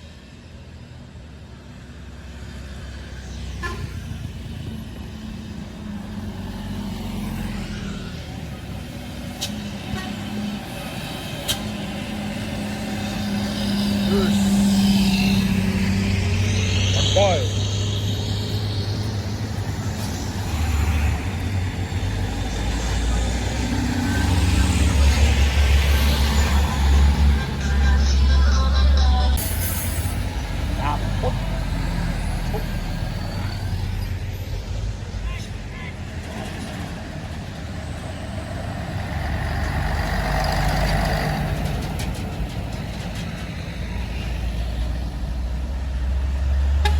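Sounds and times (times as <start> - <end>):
truck diesel engine droning: 1.2 - 46.9.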